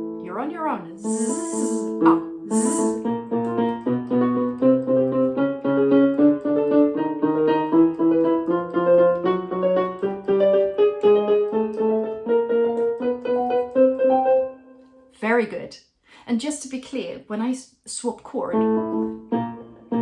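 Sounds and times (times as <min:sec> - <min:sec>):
piano chords: 0:00.0 - 0:15.1, 0:18.5 - 0:20.0.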